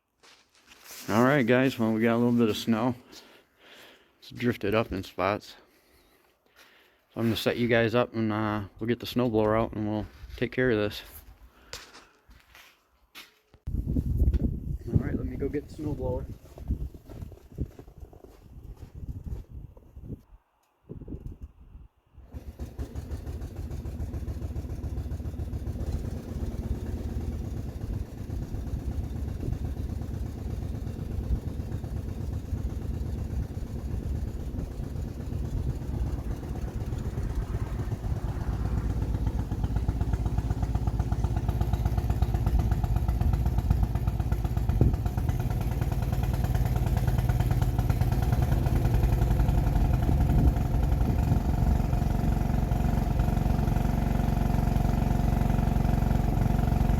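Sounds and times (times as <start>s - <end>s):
snowblower engine running: 0.8s - 4.5s, 22.2s - 56.9s.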